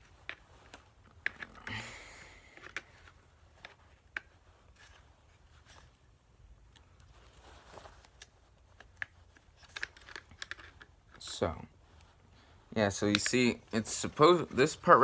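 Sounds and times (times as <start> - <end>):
small parts clicking and tapping: 0.0 - 1.8, 2.5 - 4.4, 8.1 - 11.3, 13.0 - 13.6.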